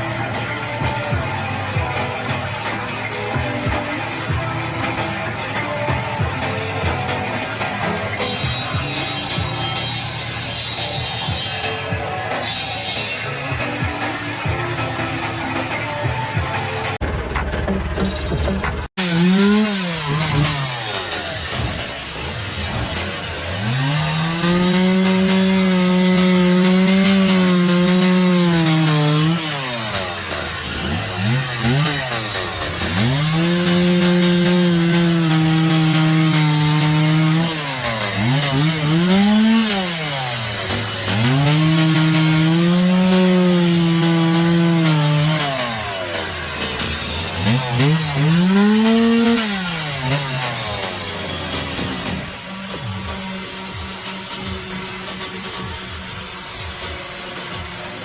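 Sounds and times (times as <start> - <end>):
chainsaw cutting wood: 0.0 - 17.0, 18.9 - 58.0
chainsaw engine revving: 0.0 - 17.0, 19.0 - 58.0.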